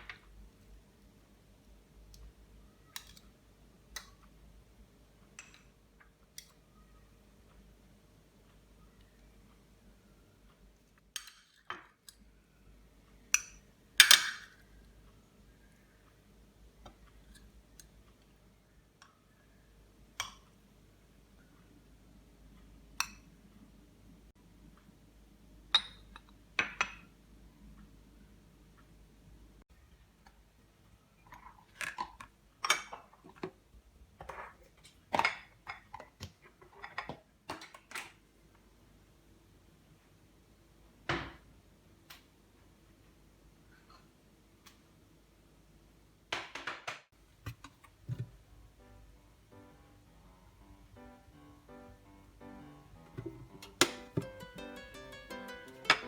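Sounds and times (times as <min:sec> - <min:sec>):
dishes and utensils clinking: 0:53.2 - 0:56.0.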